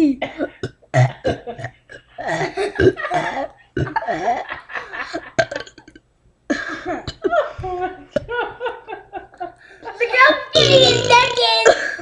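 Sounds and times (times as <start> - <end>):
child burping: 0.2 - 4.3, 5.4 - 6.0, 10.5 - 12.0
child laughing: 9.9 - 12.0.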